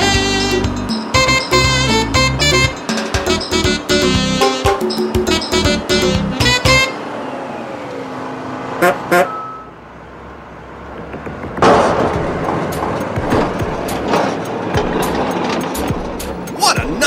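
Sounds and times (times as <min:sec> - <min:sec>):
background music: 0:00.0 - 0:07.0
vehicle horn toots: 0:00.0 - 0:07.0, 0:08.8 - 0:09.8
rushing crackling vehicle noise: 0:09.8 - 0:17.0.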